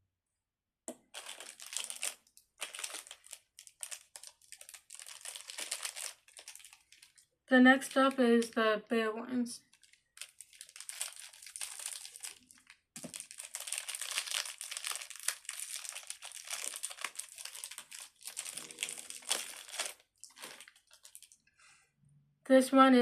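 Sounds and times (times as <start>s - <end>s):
plastic packaging crinkling: 0.9s - 8.0s, 9.6s - 21.4s.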